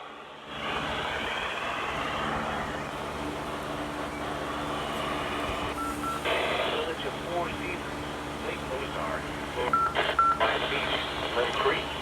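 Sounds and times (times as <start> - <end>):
faint low hum tones: 2.8 - 12.0
radio static hiss: 4.3 - 12.0.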